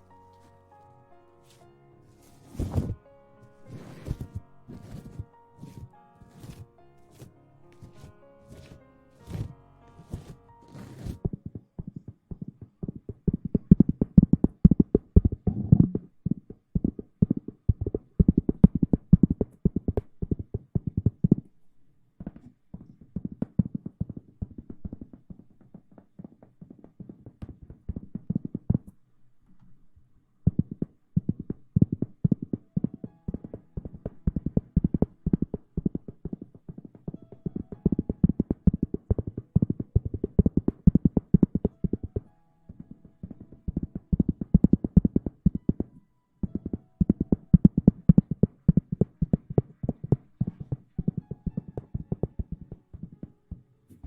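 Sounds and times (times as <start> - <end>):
scratchy rustling on microphone: 1.4 - 21.4, 30.6 - 53.3.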